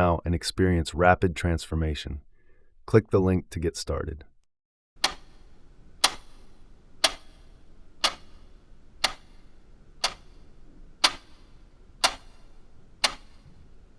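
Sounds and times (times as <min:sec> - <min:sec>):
clock ticking: 0:05.0 - 0:13.9.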